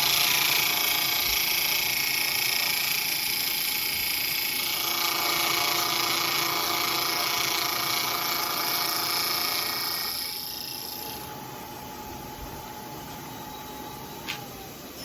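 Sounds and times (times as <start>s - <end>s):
milling cutter cutting metal: 0.0s - 11.4s
milling machine running: 0.0s - 15.0s.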